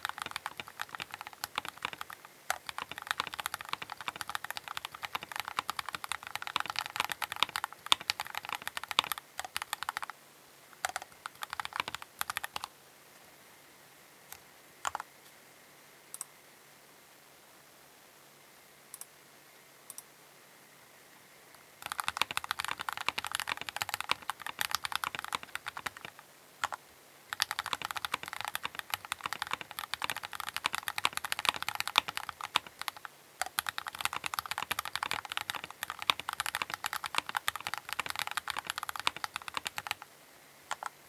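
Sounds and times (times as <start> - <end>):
mechanical keyboard typing: 0.0 - 10.1, 10.8 - 12.7, 14.8 - 15.0, 21.8 - 40.1, 40.7 - 41.0.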